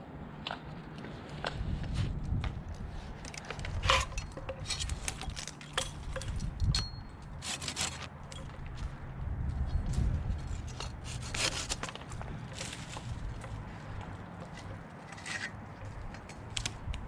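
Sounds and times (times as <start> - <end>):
wood and tools being handled: 2.7 - 9.0, 9.7 - 17.0.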